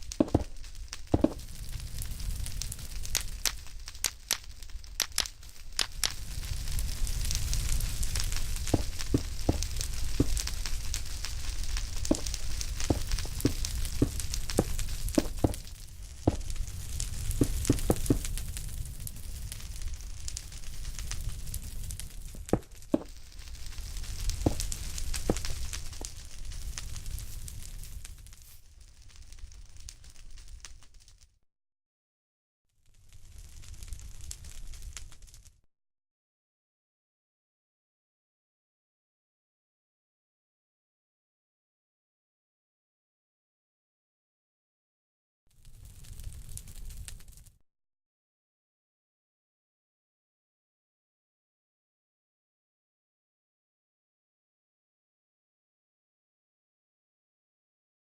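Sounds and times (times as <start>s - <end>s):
low rumble of fire: 0.0s - 31.3s, 32.8s - 35.7s, 45.6s - 47.6s
wood fire crackling: 0.0s - 31.3s, 32.9s - 35.6s, 45.6s - 47.6s.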